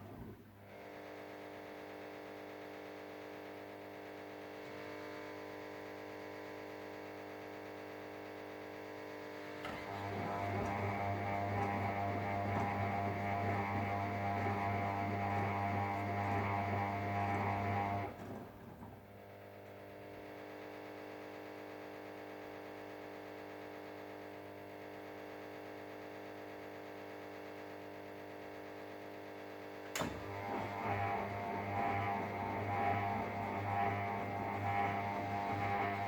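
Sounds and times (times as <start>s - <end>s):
washing machine drum motor whine: 9.3s - 21.1s, 29.8s - 36.0s.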